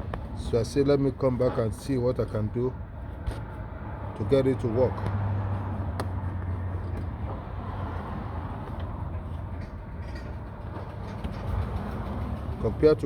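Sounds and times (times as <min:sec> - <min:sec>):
low vehicle rumble: 0:02.8 - 0:13.0.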